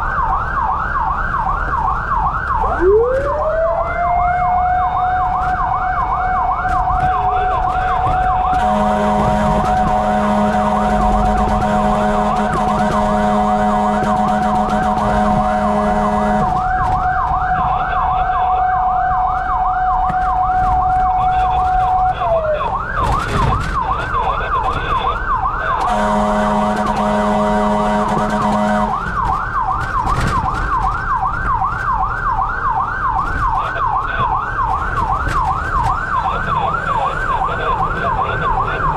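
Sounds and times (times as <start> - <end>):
steady tone siren: 0.0 - 38.9
electronic siren yelping: 1.9 - 26.3, 33.0 - 38.9
fire truck horn blast: 6.9 - 17.1, 25.8 - 29.3.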